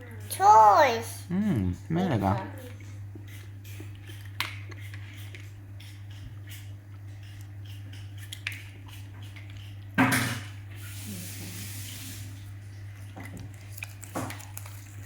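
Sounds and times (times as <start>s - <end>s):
steady low hum: 0.0s - 11.2s.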